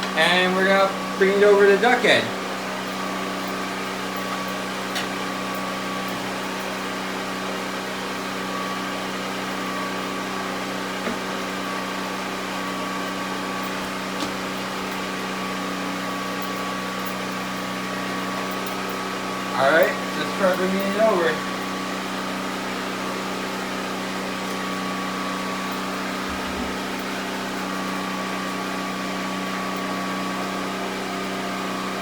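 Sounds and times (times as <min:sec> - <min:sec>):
steady mechanical hum: 0:00.0 - 0:32.0.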